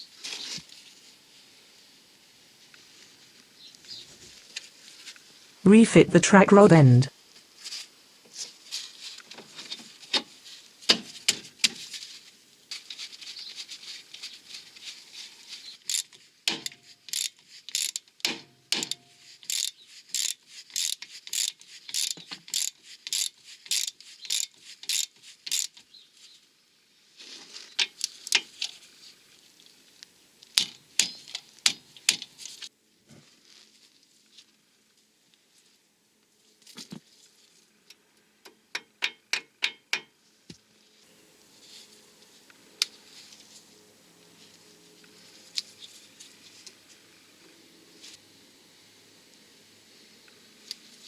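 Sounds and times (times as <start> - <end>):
ratchet wrench clicking: 15.9 - 25.8.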